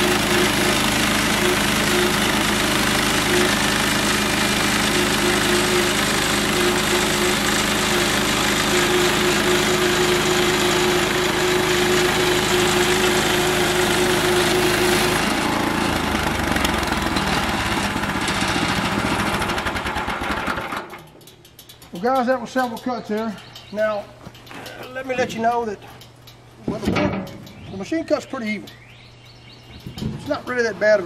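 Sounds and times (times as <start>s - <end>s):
saw whine: 0.0s - 19.1s
band sawmill cutting logs: 0.0s - 21.0s.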